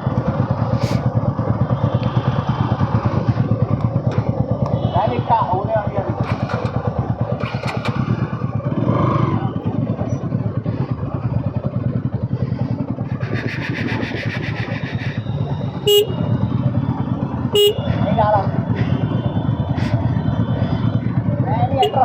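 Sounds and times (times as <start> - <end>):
motorcycle engine running: 0.0 - 22.0
vehicle horn buzzing: 15.8 - 16.3, 17.5 - 18.0, 21.8 - 22.0
short horn toot: 15.9 - 16.2.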